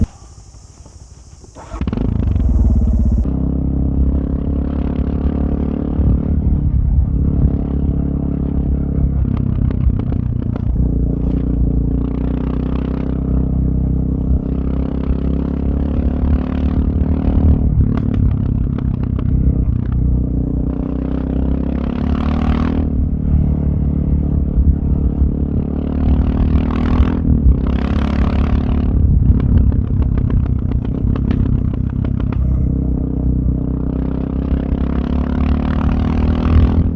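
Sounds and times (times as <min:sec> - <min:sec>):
motorcycle engine revving: 0:00.0 - 0:36.9
gravel clattering under tyres: 0:29.3 - 0:32.8.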